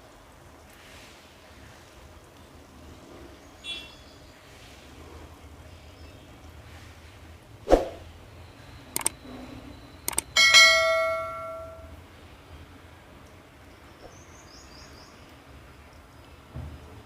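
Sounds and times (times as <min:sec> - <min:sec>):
metal kitchenware clinking: 0:10.4 - 0:11.9
ringing strike on metal vessel: 0:10.4 - 0:12.0.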